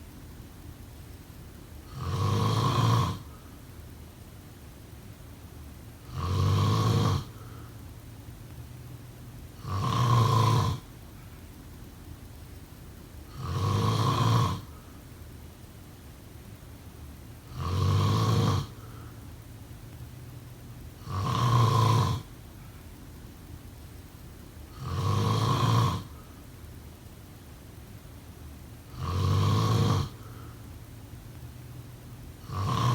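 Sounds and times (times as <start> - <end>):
person snoring: 1.9 - 3.4, 6.0 - 7.7, 9.6 - 11.0, 13.3 - 14.8, 17.5 - 19.1, 21.0 - 22.3, 24.7 - 26.3, 28.9 - 30.6, 32.4 - 32.9.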